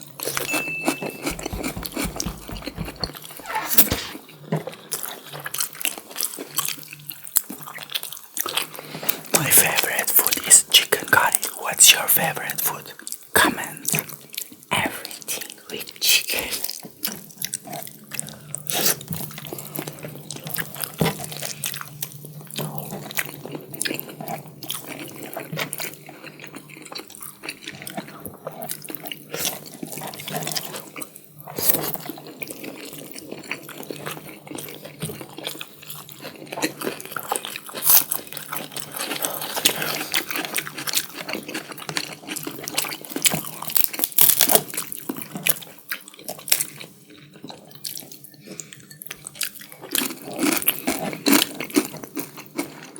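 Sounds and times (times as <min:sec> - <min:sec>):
wet chewing and lip smacking: 0:00.2 - 0:04.2.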